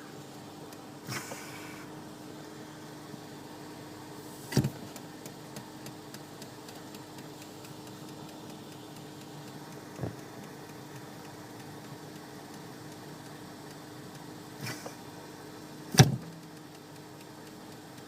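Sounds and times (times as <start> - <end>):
steady low hum: 0.0 - 18.0
car ticking: 4.6 - 18.0.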